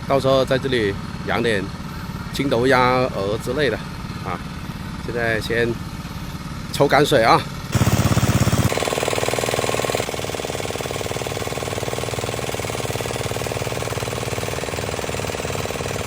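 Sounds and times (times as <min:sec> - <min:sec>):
water pump engine chugging: 0:07.7 - 0:16.0.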